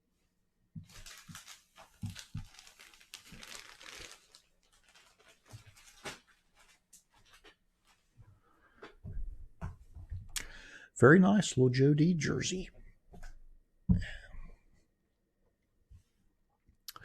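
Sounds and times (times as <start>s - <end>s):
packaging crinkling and rustling: 0.8s - 8.1s.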